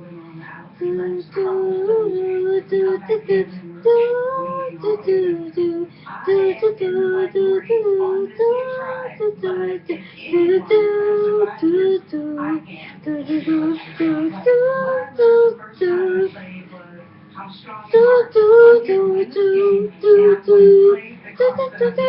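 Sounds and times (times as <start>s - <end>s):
girl singing wordless notes: 0.8s - 16.4s, 17.9s - 22.0s.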